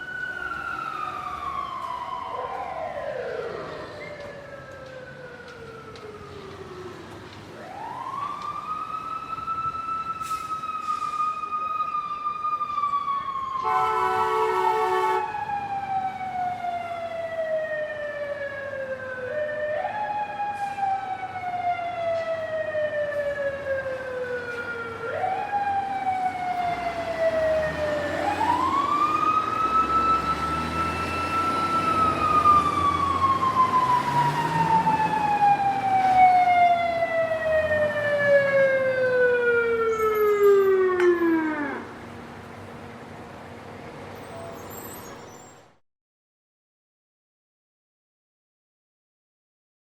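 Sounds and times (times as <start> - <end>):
fire truck siren wailing: 0.0 - 42.6
horn blast: 13.6 - 15.3.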